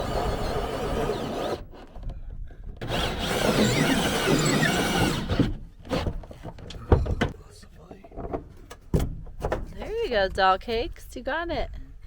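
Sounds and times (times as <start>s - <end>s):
power drill whining: 0.0s - 1.8s, 2.8s - 6.0s.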